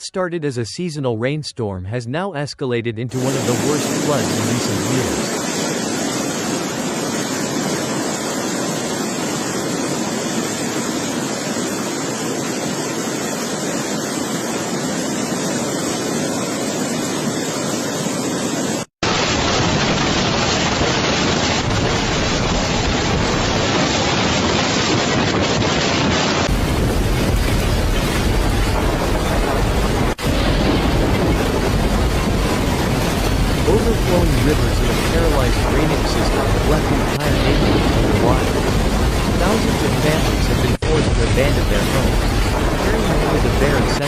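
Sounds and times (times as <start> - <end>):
water rushing: 3.1 - 44.0
wind buffeting microphone: 26.5 - 44.0.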